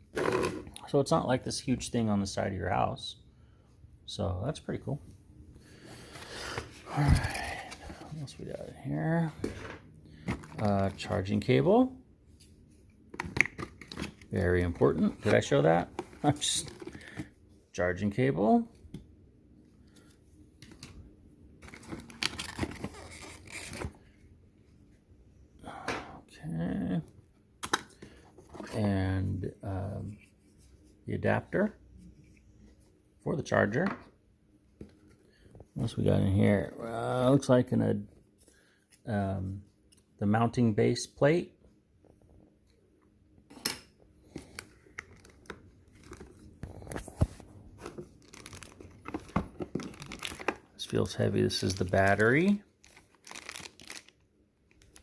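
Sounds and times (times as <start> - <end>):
packaging rustling and crinkling: 21.6 - 24.0, 44.3 - 55.0.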